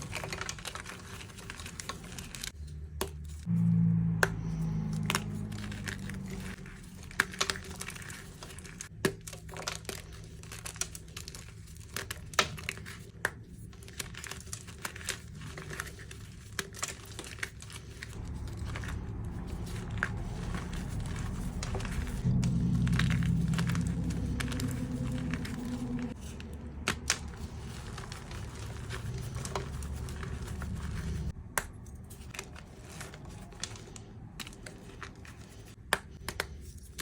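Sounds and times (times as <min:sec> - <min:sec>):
chalk crunching and crackling: 0:00.0 - 0:37.0.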